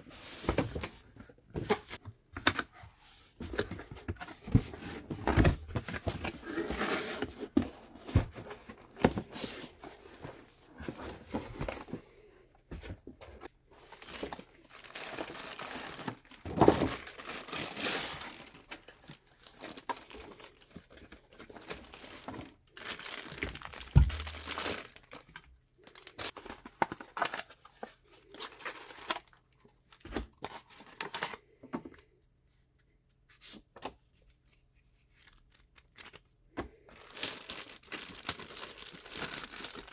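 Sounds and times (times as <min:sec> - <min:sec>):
packaging crinkling and tearing: 0:14.0 - 0:20.7, 0:21.4 - 0:27.6, 0:37.0 - 0:39.9.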